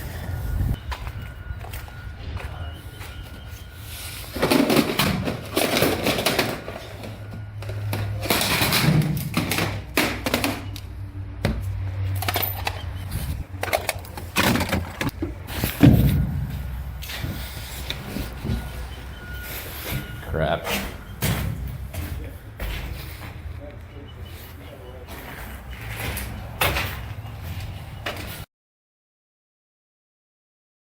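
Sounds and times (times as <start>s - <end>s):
junk being rummaged: 0.9s - 10.8s, 12.0s - 23.6s.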